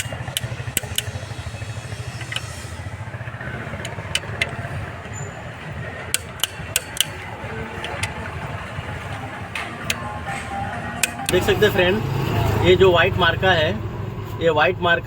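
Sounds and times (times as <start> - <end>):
steady low rumble: 0.0 - 15.0
hand tools clinking on metal: 6.0 - 8.5.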